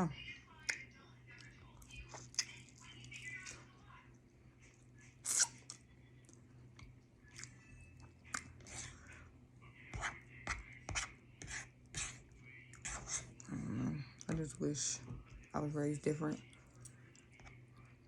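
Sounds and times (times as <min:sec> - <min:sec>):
faint low hum: 0:00.0 - 0:18.0
person chewing food: 0:05.2 - 0:09.3.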